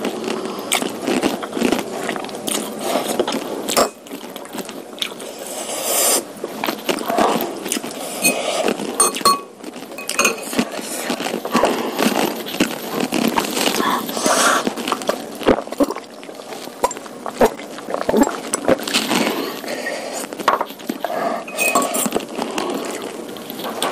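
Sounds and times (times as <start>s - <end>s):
close chewing: 0.0s - 23.9s
cutlery clinking against bowl: 9.0s - 10.6s, 21.5s - 22.2s.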